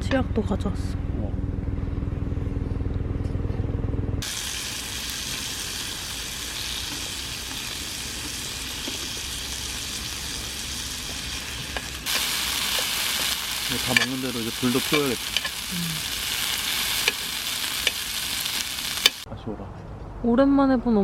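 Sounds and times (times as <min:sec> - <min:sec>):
engine-like hum: 0:00.0 - 0:21.0
meat sizzling on a grill: 0:04.2 - 0:19.3.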